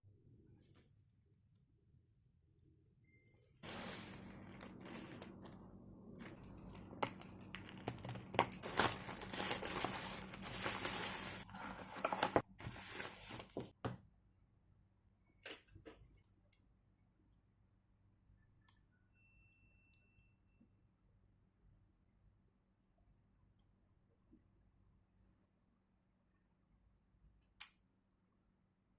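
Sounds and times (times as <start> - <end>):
crinkling and rustling: 3.6 - 13.8.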